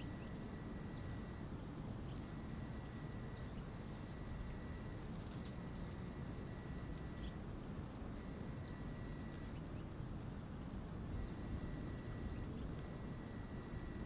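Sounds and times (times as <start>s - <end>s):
small bird chirping: 0.0s - 1.4s, 3.0s - 3.7s, 5.3s - 5.9s, 8.6s - 9.9s, 11.2s - 12.8s
low outdoor rumble: 0.0s - 14.0s.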